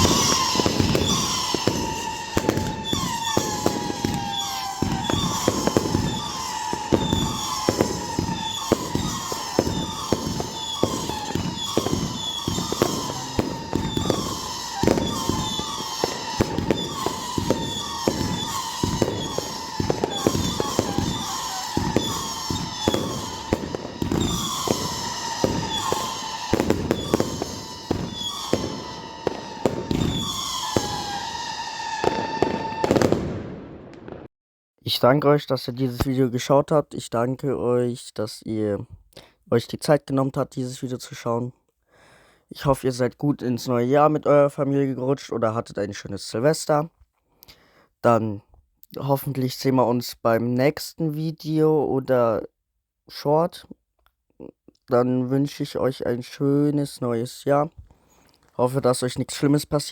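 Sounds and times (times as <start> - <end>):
falling fireworks whistles: 0.0 - 34.2
fireworks bangs: 0.0 - 34.3.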